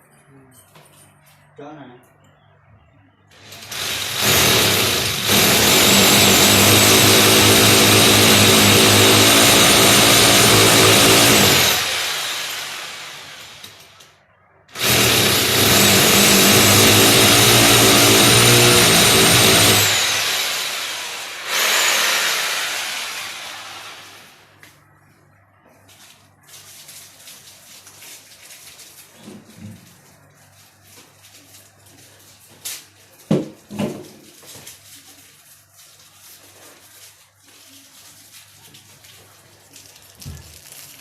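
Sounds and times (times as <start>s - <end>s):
electric drill boring: 3.4s - 14.0s, 14.8s - 24.4s.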